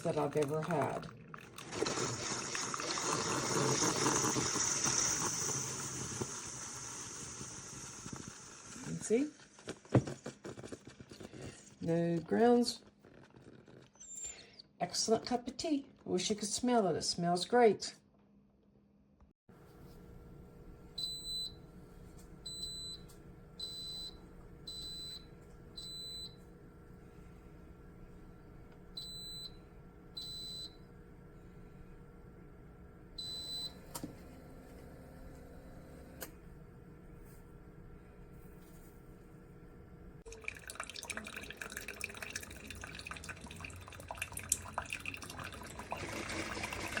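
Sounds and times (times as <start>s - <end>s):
coffee dripping into a cup: 0.1s - 8.9s, 40.2s - 47.0s
coffee maker beeps: 2.0s - 9.1s, 21.0s - 21.7s, 22.4s - 26.5s, 28.9s - 30.9s, 33.2s - 34.0s.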